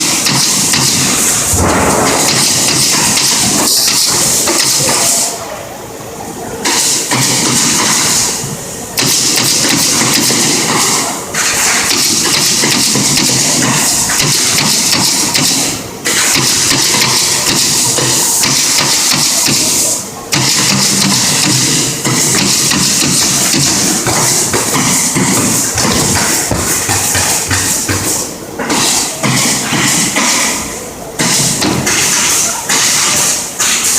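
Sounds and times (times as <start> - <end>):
pneumatic stapler firing into wood: 0.0 - 5.3, 6.6 - 8.2, 9.0 - 26.3.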